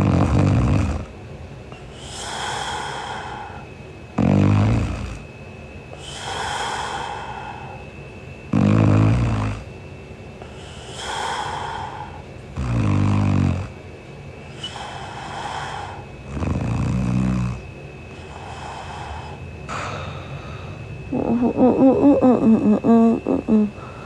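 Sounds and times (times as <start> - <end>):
woman snoring: 0.0 - 1.1, 4.2 - 5.2, 8.5 - 9.7, 10.6 - 13.8, 14.6 - 17.6, 18.2 - 24.0.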